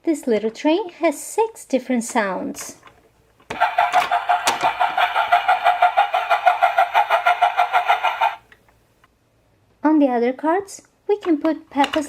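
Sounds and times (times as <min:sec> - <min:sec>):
toy train rapid pulsing tone: 0:03.5 - 0:08.5.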